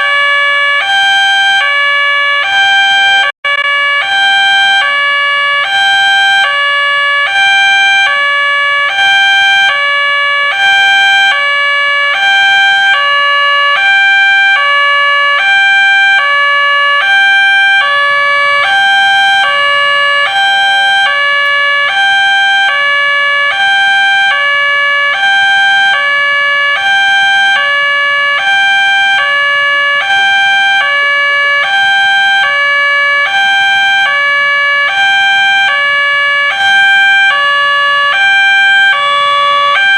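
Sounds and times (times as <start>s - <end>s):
two-tone level crossing siren: 0.0s - 39.9s.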